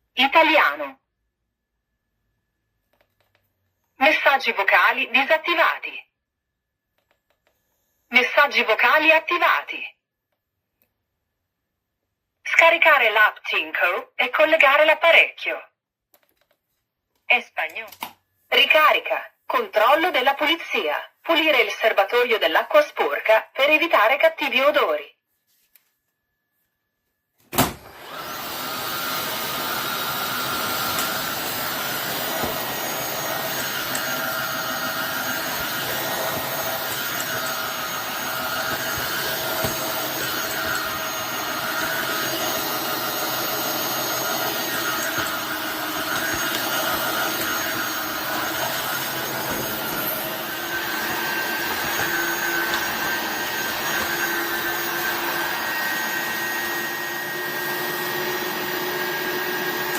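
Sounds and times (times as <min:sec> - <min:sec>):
floor washer whirring: 0:27.6 - 0:59.9.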